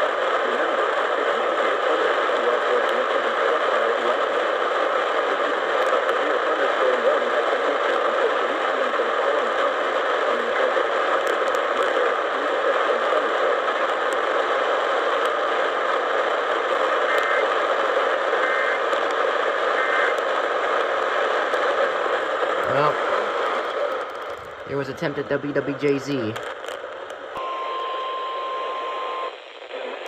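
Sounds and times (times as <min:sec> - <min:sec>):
radio static hiss: 0:00.0 - 0:30.0
faint two-tone data bursts: 0:18.4 - 0:18.8, 0:19.8 - 0:20.2, 0:27.4 - 0:30.0.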